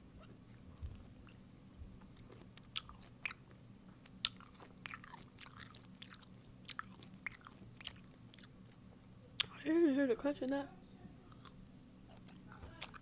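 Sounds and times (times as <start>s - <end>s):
person chewing pickle: 0.9s - 9.6s, 11.2s - 13.0s.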